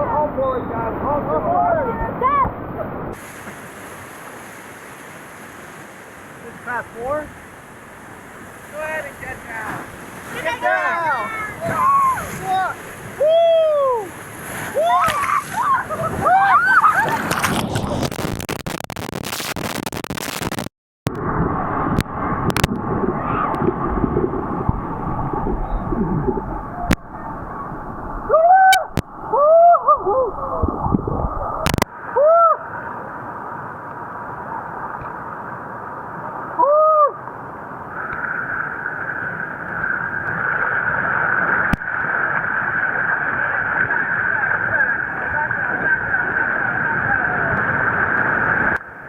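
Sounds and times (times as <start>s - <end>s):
whitewater rapids rushing: 0.2s - 18.2s, 37.7s - 49.0s.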